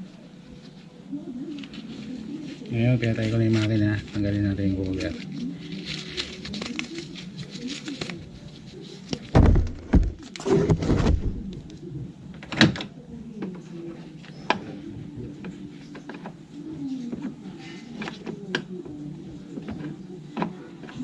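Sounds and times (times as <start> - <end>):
plastic cover thumping: 9.1 - 11.6.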